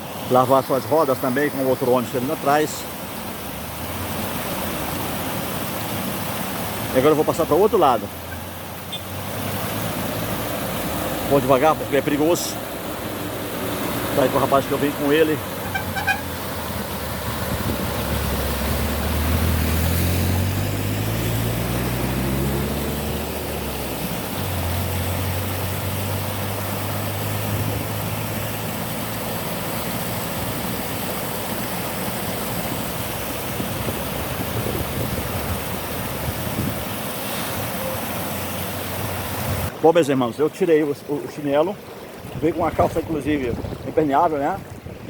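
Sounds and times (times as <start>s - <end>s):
water rushing at a waterfall: 0.0s - 45.0s
vehicle engine revving: 12.6s - 30.3s.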